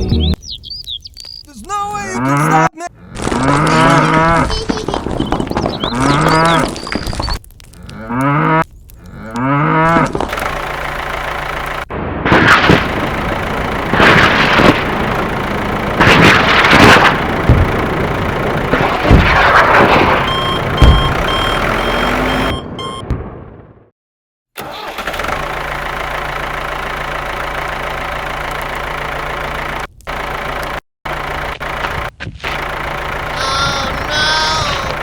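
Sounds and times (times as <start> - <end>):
cow mooing: 2.2 - 4.5, 7.8 - 10.2
short beeps: 20.3 - 23.1.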